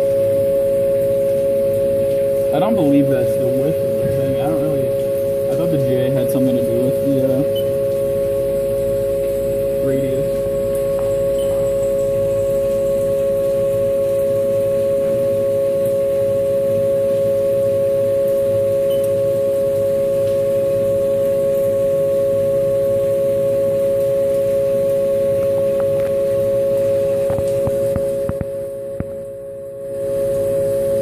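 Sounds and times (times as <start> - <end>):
milling machine cutting steel whine: 1.6 - 15.5.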